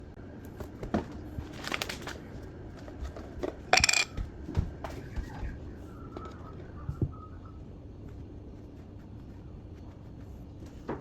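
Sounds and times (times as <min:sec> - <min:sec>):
small hard objects rattling: 0:03.7 - 0:04.1
metallic clink: 0:03.8 - 0:04.1.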